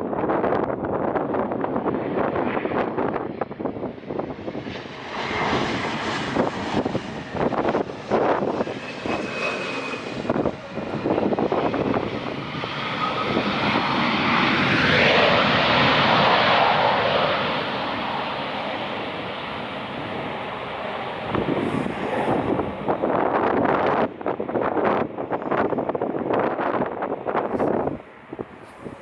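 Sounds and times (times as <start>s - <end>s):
airliner passing overhead: 0.0s - 29.0s
wind buffeting microphone: 0.0s - 29.0s.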